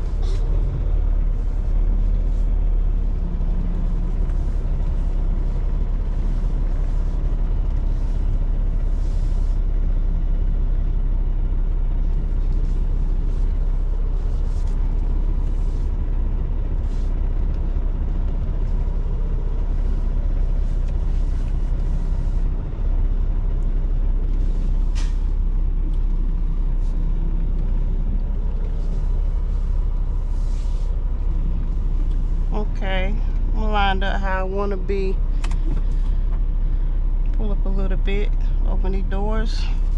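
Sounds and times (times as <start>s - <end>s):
diesel truck engine running: 0.0s - 39.9s
air brakes hissing: 24.6s - 25.4s.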